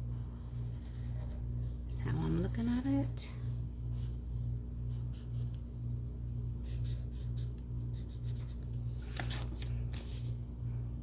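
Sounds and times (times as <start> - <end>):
highlighter scratching on paper: 3.4 - 8.8.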